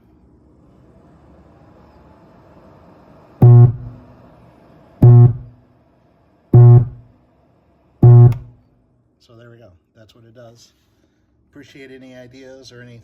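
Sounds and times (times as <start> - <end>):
faint hum: 0.0 - 9.8
subwoofer loud buzzing bursts: 3.4 - 4.1, 5.0 - 5.6, 6.6 - 7.1, 8.0 - 8.6.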